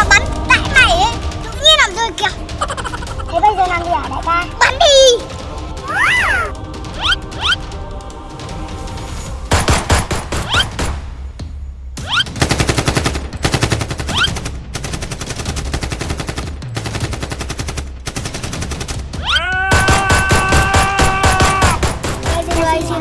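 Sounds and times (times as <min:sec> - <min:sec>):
automatic gunfire: 0:12.4 - 0:22.6.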